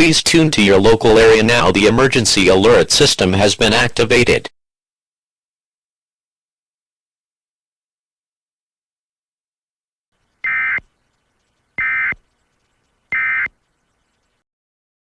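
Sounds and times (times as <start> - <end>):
short electronic data tone bursts: 10.4 - 14.2.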